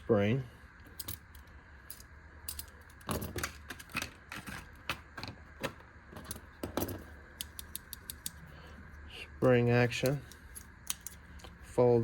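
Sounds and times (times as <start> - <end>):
multi-tool metal clicks and snaps: 7.4 - 8.4, 10.0 - 11.5.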